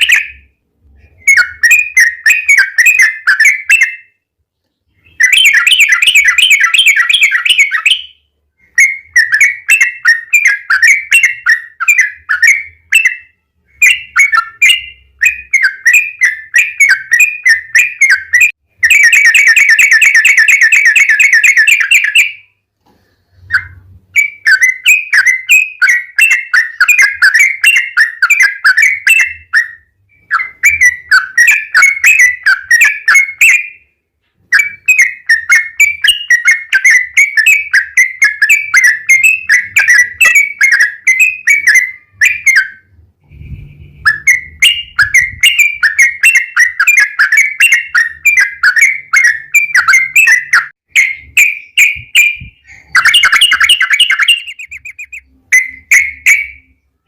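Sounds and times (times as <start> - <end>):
fast rolling bird trill: 34.5 - 56.7
bird singing bubbling chirps: 44.0 - 56.9.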